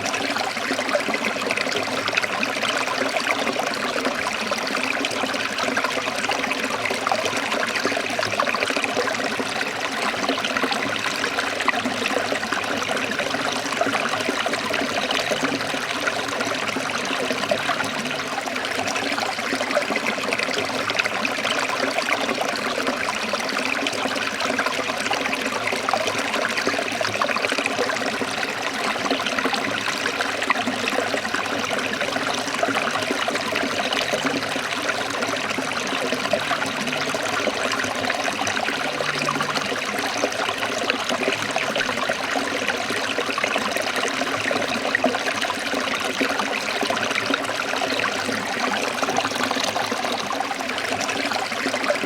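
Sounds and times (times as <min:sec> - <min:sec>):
stream water over rocks: 0:00.0 - 0:52.0.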